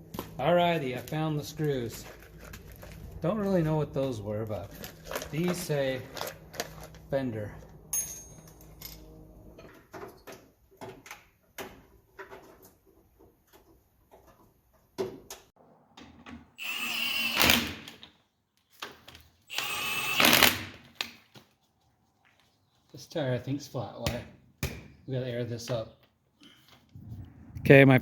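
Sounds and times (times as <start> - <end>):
power driver whirring: 16.6 - 18.1, 19.5 - 20.9.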